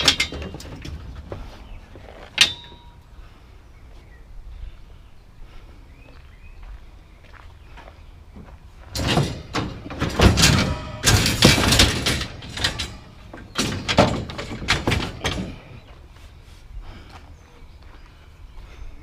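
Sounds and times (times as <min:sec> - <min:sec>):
hard objects clattering and banging: 0:00.0 - 0:03.0, 0:08.9 - 0:15.9.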